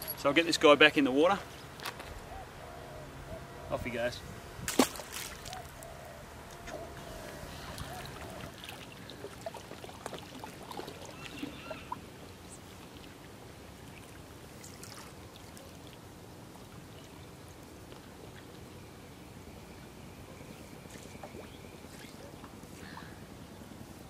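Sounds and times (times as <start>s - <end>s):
light splashes and clicks: 4.7s - 5.6s, 8.5s - 11.4s
small waves lapping: 4.7s - 5.8s, 6.5s - 17.9s, 20.9s - 23.2s.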